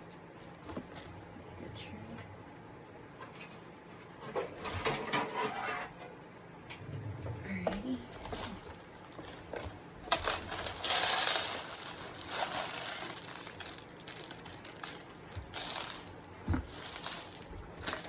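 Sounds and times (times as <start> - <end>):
plastic packaging crinkling: 8.2 - 18.0.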